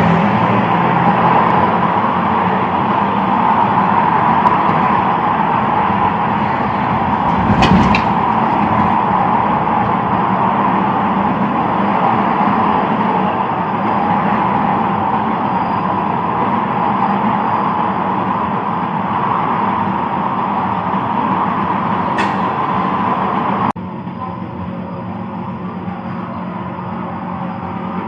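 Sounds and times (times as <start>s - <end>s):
road vehicle rushing noise: 0.0s - 23.8s.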